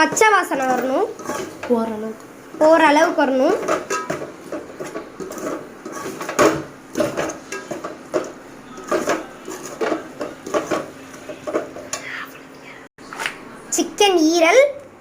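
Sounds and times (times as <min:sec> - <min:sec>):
spoon scraping and knocking pot: 0:00.0 - 0:01.7, 0:03.6 - 0:12.0.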